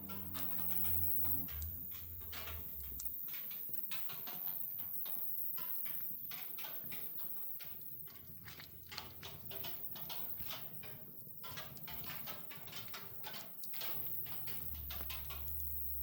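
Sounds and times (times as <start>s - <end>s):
wood fire crackling: 0.0s - 16.0s
low rumble: 0.2s - 3.2s.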